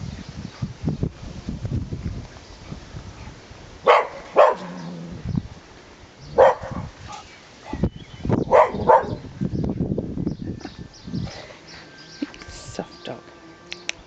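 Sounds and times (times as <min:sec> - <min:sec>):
dog barking: 0:03.8 - 0:04.9, 0:06.4 - 0:06.9, 0:08.4 - 0:09.2.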